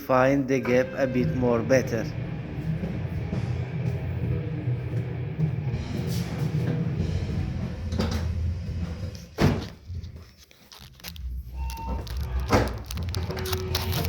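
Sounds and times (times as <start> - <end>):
background music: 0.0 - 10.2.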